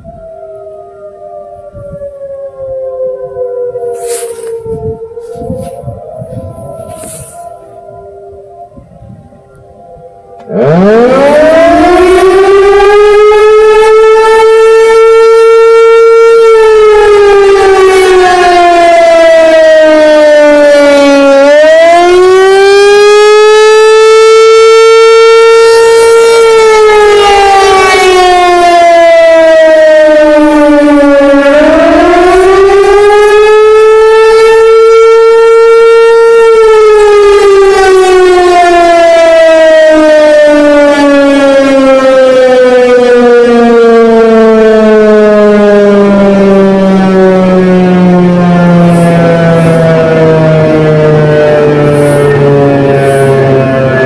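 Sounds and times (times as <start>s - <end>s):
warning siren wailing: 0.0s - 54.0s.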